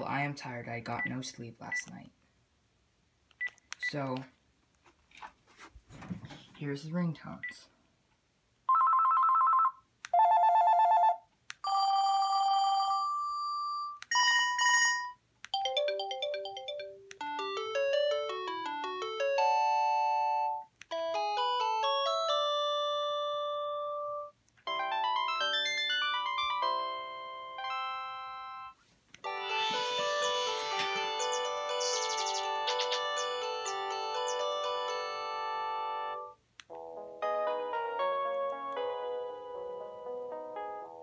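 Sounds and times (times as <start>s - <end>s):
electronic beeping ringtone melodies: 27.7s - 37.1s
phone warbling trill ring: 29.6s - 35.5s.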